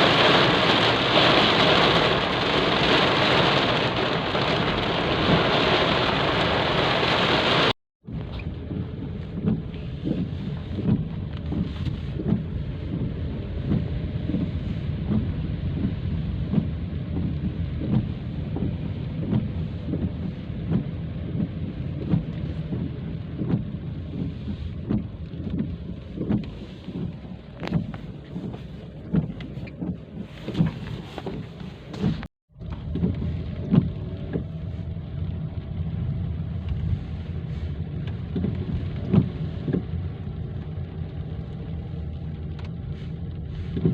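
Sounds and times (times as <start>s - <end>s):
heavy rain pouring: 0.0s - 7.8s.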